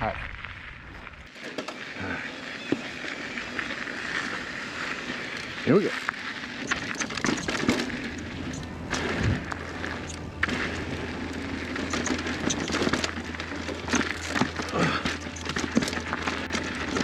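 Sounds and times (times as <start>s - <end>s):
bike tyres on dirt: 0.0s - 17.0s
bike knocking and rattling: 1.3s - 17.0s
wind rumble on microphone: 7.2s - 12.8s.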